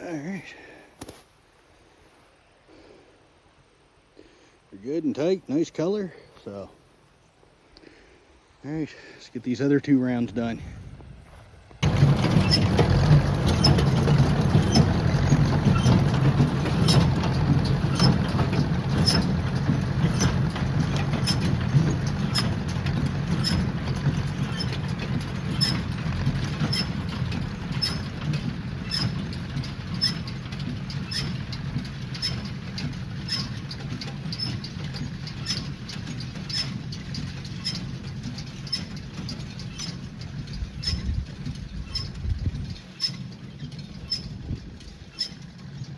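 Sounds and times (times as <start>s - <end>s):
tractor engine running: 9.5s - 45.9s
baler clicking: 11.8s - 45.9s.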